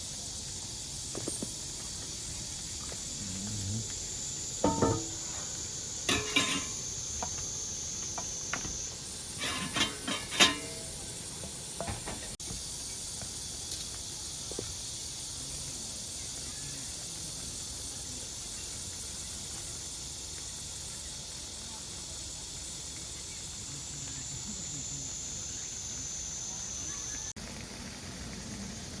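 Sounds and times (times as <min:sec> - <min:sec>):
pot and utensils clattering: 0:04.6 - 0:07.5, 0:08.1 - 0:12.4.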